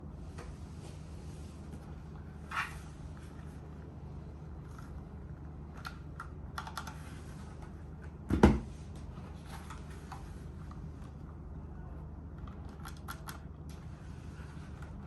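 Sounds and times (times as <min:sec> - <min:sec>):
mechanical keyboard key clacks: 0:12.4 - 0:13.4.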